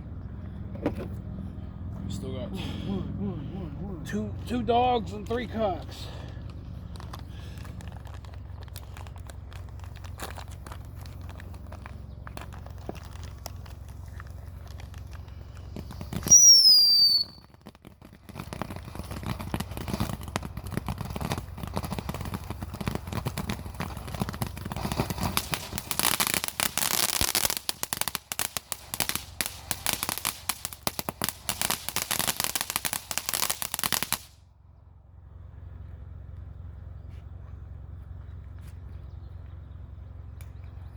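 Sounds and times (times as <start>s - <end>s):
firework crackling pops: 7.0s - 34.4s
firework falling whistle: 15.8s - 17.6s.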